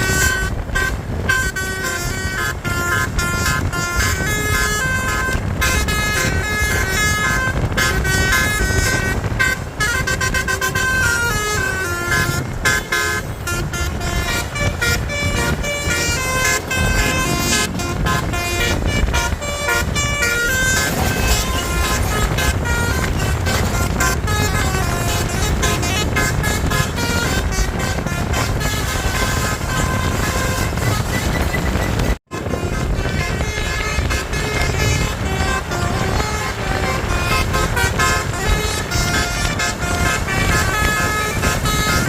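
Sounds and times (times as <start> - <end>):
bus engine rumble: 0.0 - 42.0
bus horn melody: 0.0 - 42.0.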